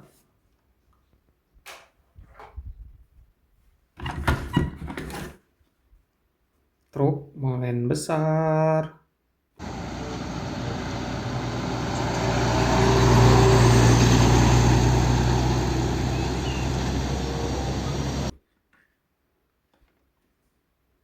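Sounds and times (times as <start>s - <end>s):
truck engine droning past: 9.6s - 18.3s.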